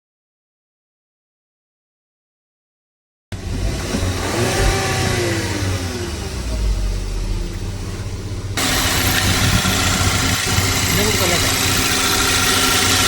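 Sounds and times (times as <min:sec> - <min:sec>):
car engine idling with whine: 0:03.3 - 0:13.0.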